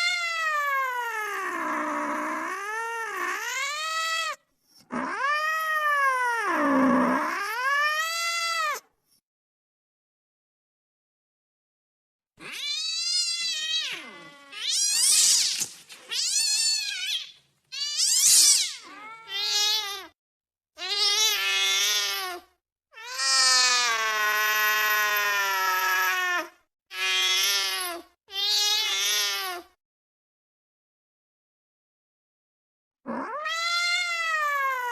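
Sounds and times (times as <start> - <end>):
cat yowling: 0.0 - 8.8, 12.4 - 15.4, 16.1 - 20.2, 23.0 - 29.6, 33.1 - 34.9.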